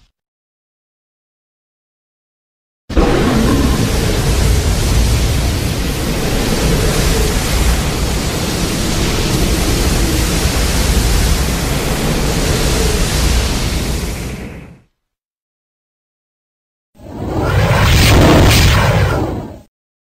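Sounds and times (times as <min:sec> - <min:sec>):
loud steady rushing noise: 0:02.9 - 0:14.6.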